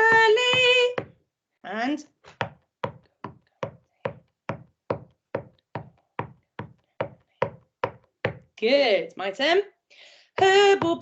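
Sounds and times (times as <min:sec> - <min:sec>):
steady sharp knocks: 0:00.0 - 0:01.2, 0:02.4 - 0:08.5.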